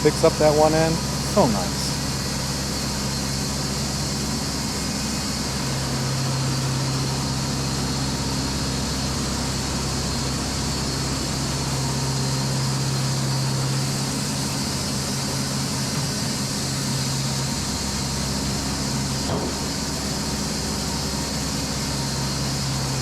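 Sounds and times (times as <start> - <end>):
constant hiss: 0.0 - 2.0
sawmill machine hum: 0.0 - 23.0.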